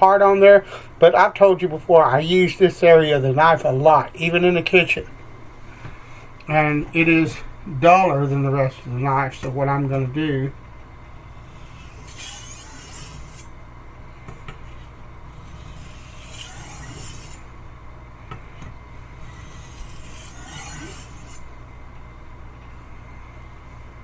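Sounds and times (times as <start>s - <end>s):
low steady hum: 0.0s - 24.0s
knife rasping on whetstone: 11.4s - 13.5s, 15.4s - 17.4s, 19.3s - 21.4s.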